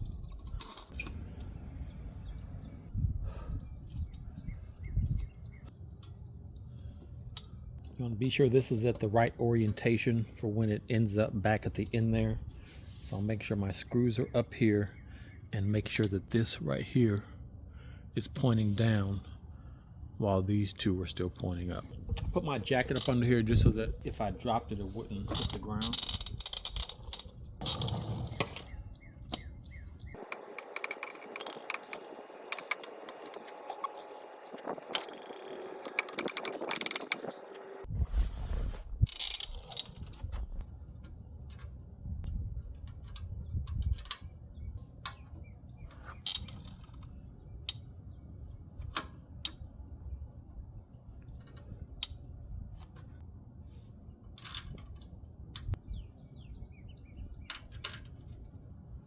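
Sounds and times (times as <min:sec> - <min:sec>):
hand tools clicking on metal parts: 0:30.2 - 0:37.4.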